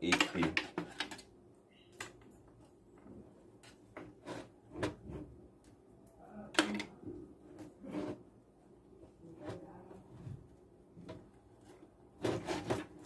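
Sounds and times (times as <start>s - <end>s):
computer hardware clicks and knocks: 0.0s - 1.3s.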